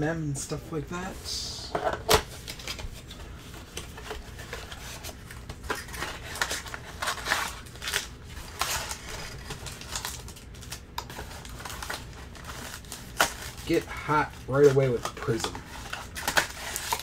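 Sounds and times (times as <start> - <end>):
plastic wrap crinkling and tearing: 3.8 - 17.0.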